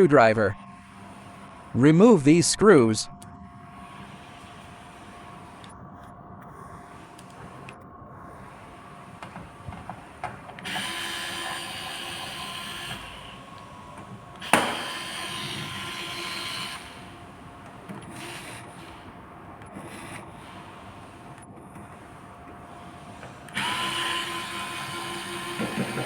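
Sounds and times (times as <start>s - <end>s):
power screwdriver whirring: 3.7s - 5.7s, 9.0s - 21.4s, 22.0s - 26.0s.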